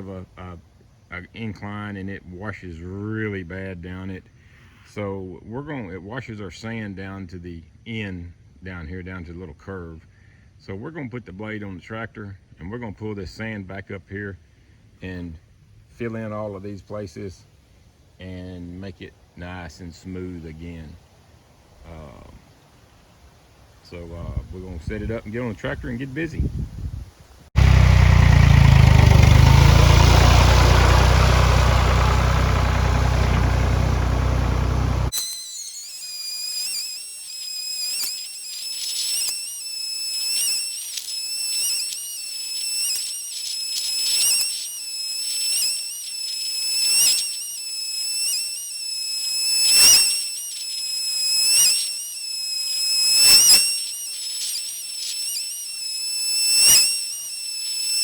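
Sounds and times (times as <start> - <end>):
tractor engine running: 27.6 - 35.1
high-pitched whistling tone: 27.6 - 58.0.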